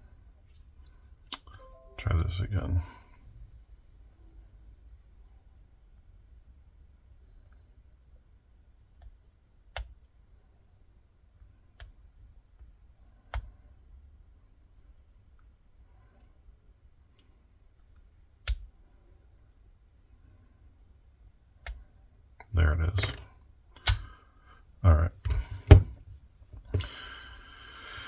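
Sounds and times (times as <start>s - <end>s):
lock pick clicking in padlock: 23.8s - 24.1s.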